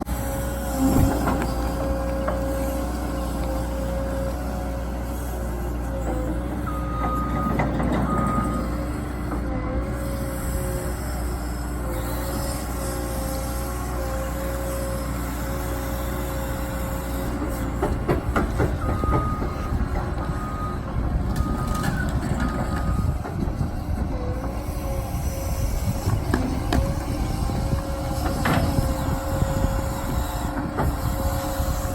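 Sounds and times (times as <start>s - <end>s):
diesel engine of heavy machine: 0.0s - 31.9s
reversing alarm beeping: 6.6s - 9.3s, 18.5s - 23.8s.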